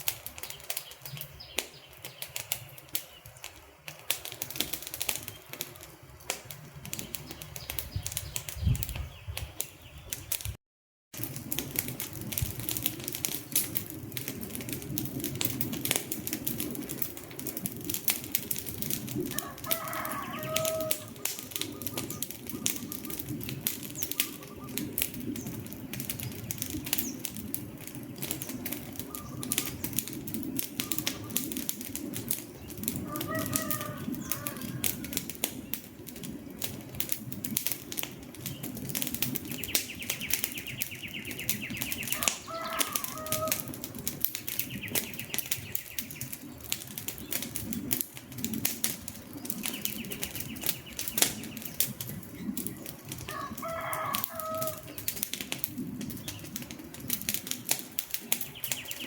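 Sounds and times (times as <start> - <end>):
low rumble of burning logs: 0.0 - 10.6, 11.2 - 59.0
wood fire crackling: 0.0 - 59.0.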